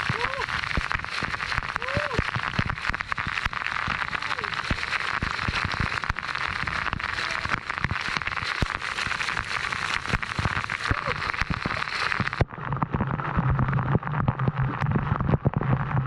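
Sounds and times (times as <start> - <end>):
water drops ticking on microphone: 0.0 - 16.0
waterfall rushing: 8.4 - 12.4.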